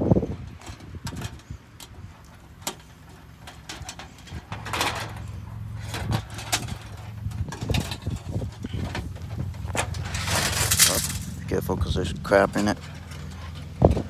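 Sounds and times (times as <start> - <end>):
scraping rustle: 0.0 - 14.0
plastic and metal parts clicking: 0.2 - 11.4.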